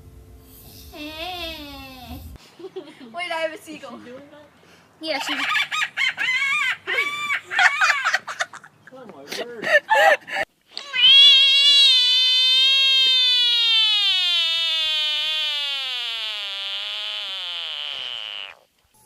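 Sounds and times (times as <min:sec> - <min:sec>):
long falling animal call: 0:05.5 - 0:07.9, 0:10.8 - 0:18.7.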